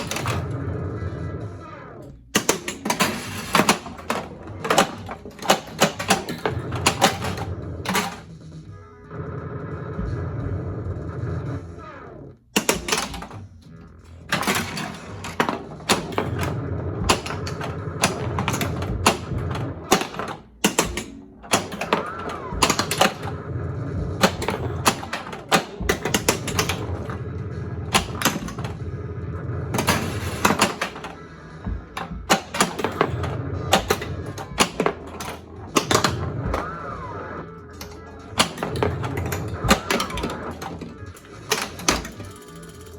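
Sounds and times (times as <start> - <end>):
pinball flippers clacking: 0.0 - 8.3, 12.4 - 42.9
game music: 0.0 - 42.9
ball knocking against bumpers: 2.3 - 8.2, 12.5 - 37.0.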